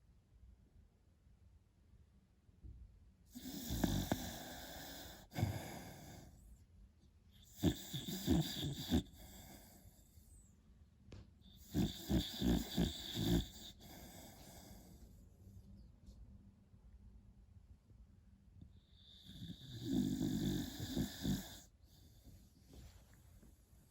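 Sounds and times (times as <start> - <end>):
puppy snoring: 3.3 - 6.4, 7.4 - 10.4, 11.4 - 15.2, 18.7 - 22.5.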